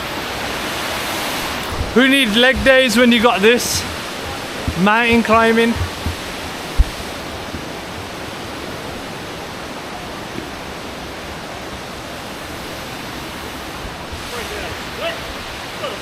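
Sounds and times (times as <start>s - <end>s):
waterfall rushing: 0.0s - 16.0s
sharp knock: 3.7s - 7.7s.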